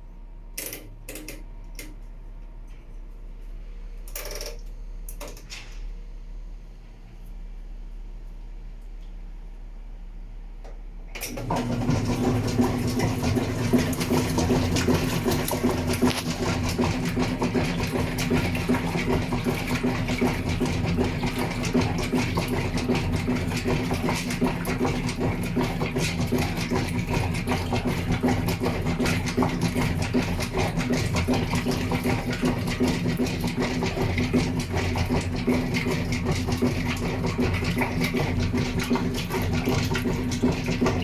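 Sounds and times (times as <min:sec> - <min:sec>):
washing machine motor hum: 0:00.0 - 0:41.0
washing machine rattling: 0:11.2 - 0:41.0.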